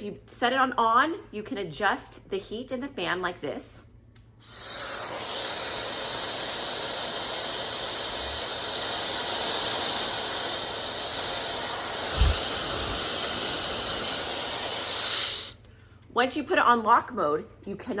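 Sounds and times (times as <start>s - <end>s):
hair dryer running: 4.5s - 15.6s.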